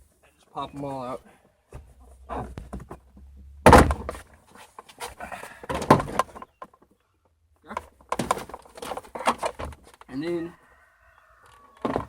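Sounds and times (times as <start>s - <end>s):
plastic panel creaking and scraping: 1.8s - 5.1s, 7.8s - 10.1s, 11.4s - 12.0s.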